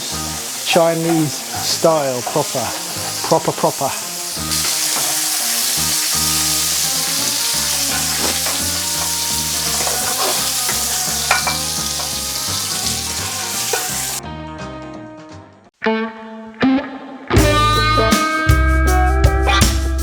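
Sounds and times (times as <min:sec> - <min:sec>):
prawns sizzling in oil: 0:00.0 - 0:14.2.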